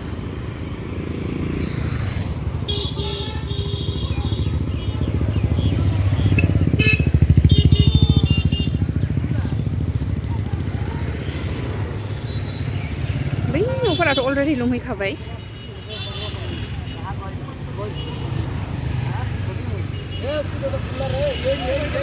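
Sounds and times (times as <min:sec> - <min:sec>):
vehicle engine passing: 0:03.9 - 0:15.2.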